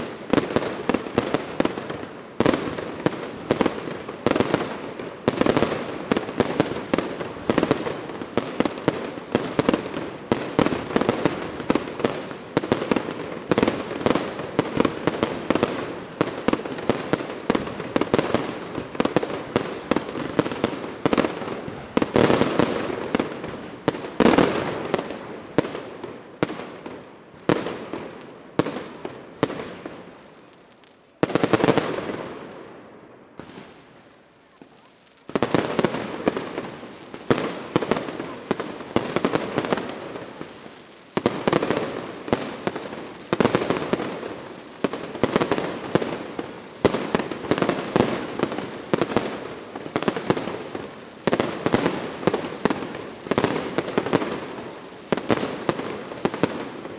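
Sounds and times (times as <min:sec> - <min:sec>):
fireworks bangs: 0:00.0 - 0:56.9.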